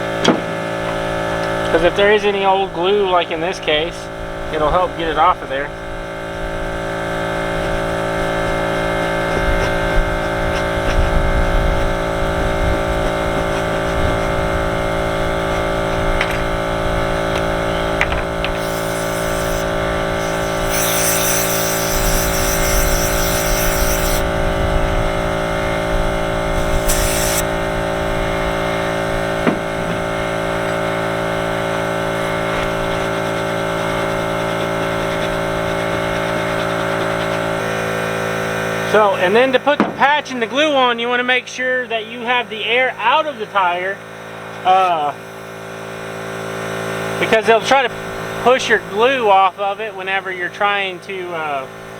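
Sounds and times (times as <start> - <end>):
air compressor humming: 0.0 - 51.9
aerosol can spraying: 18.3 - 24.4, 26.5 - 27.6, 32.6 - 37.6.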